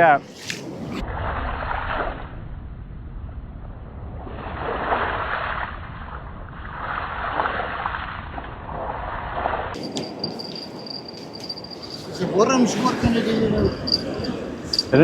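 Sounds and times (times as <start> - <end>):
wind rumble on microphone: 0.5 - 12.2, 12.9 - 15.0.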